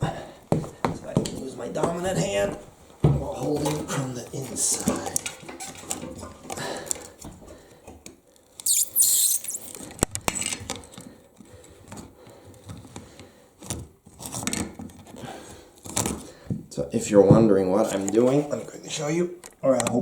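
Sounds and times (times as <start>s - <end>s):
loud hissing scrape: 8.7s - 9.8s.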